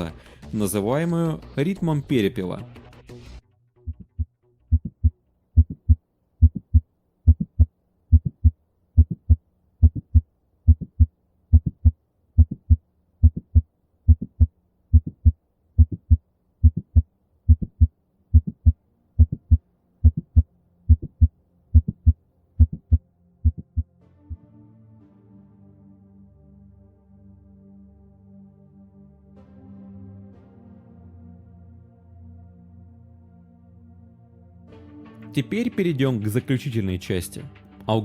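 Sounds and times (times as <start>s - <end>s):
heartbeat with opening snap click: 3.9s - 23.9s.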